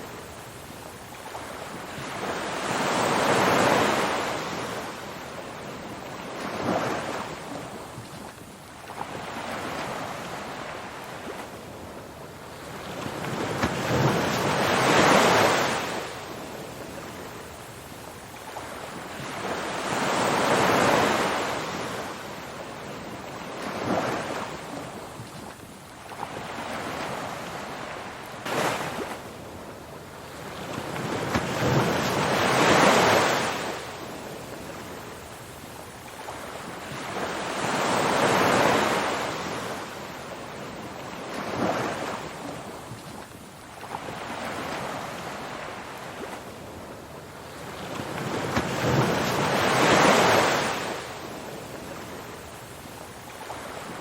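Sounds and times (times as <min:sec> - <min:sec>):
ocean waves washing back: 0:18.6 - 0:54.0.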